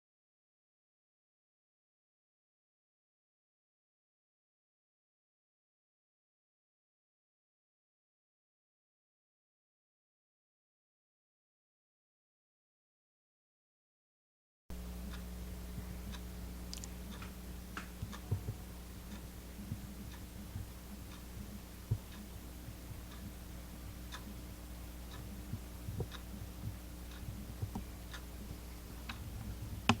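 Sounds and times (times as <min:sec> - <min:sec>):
steady low hum: 0:14.7 - 0:30.0
small clicks and ticks: 0:15.1 - 0:30.0.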